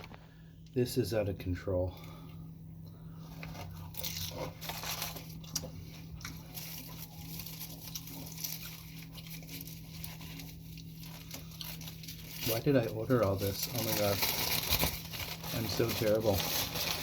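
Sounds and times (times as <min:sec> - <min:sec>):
crunchy chewing: 0:03.3 - 0:12.8
packaging crackling: 0:03.5 - 0:17.0.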